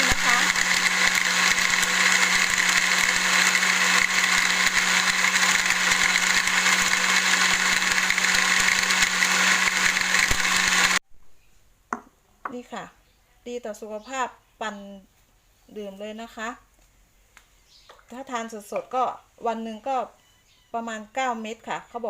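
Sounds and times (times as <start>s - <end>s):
blender running: 0.0s - 11.0s.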